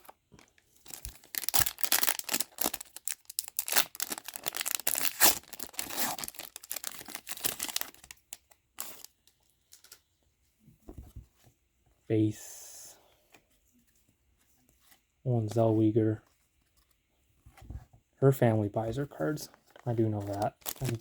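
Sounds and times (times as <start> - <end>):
wrapper tearing and crinkling: 0.8 - 8.2, 8.8 - 9.1, 20.3 - 21.0
cards clicking and rustling: 19.7 - 21.0.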